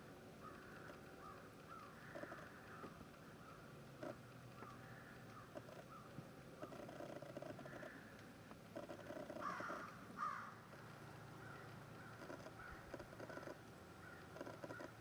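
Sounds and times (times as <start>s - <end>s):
faint chattering bird calls: 0.0s - 15.0s
harsh bird calls: 4.6s - 8.1s, 11.4s - 15.0s.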